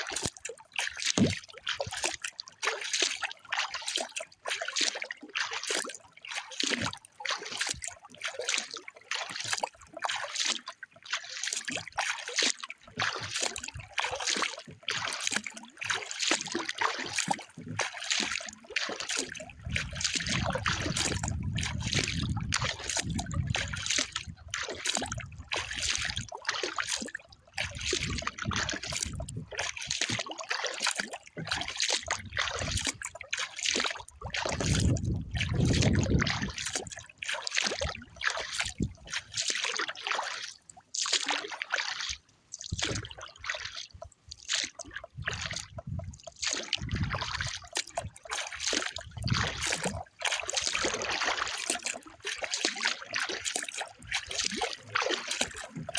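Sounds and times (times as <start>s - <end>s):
water trickling and splashing: 0.0s - 55.9s
wind buffeting microphone: 19.6s - 24.5s, 27.7s - 29.5s, 34.5s - 36.6s, 45.2s - 46.2s, 46.8s - 47.5s.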